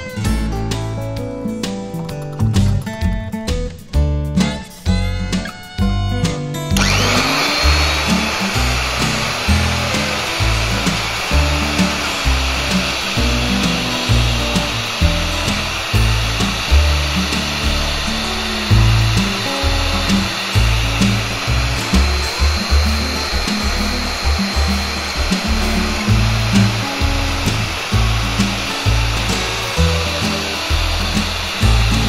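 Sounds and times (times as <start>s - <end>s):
background music with bass line: 0.0s - 32.0s
electric motor whirring: 6.8s - 32.0s.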